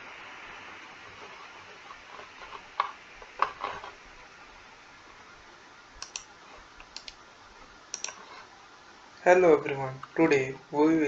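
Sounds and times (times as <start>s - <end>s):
steady background hiss: 0.0s - 11.0s
sharp clicks: 6.0s - 7.2s, 7.9s - 8.2s.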